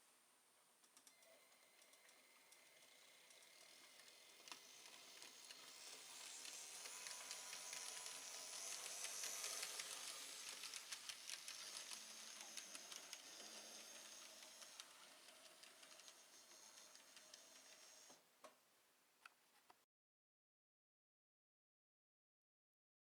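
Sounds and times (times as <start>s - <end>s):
model train motor hiss: 1.6s - 18.2s
rapid ticks on track: 1.8s - 18.2s.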